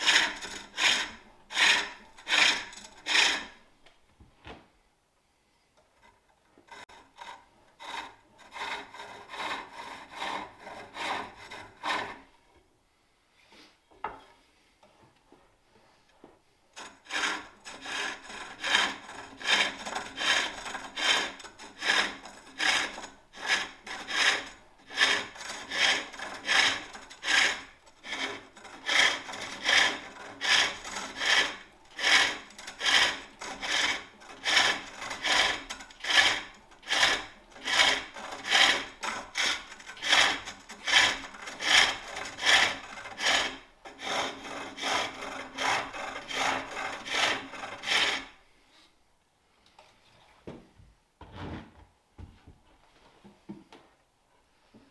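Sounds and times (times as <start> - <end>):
lathe tool cutting wood: 0.0 - 3.5, 17.1 - 48.3.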